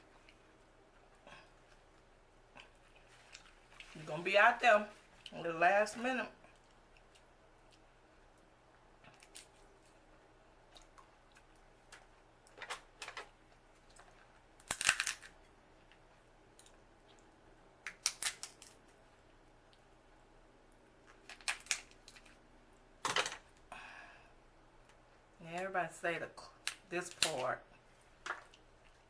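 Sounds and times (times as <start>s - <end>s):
cracking and smacking while eating: 0.1s - 4.0s, 6.4s - 19.9s, 20.6s - 23.6s, 26.6s - 29.0s.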